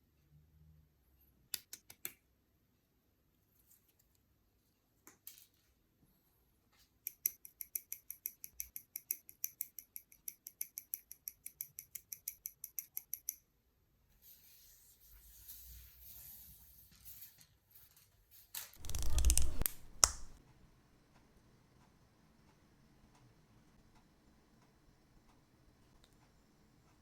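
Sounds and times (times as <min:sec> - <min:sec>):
plastic snips: 0:18.8 - 0:20.4
rapid small clicks: 0:18.8 - 0:20.4.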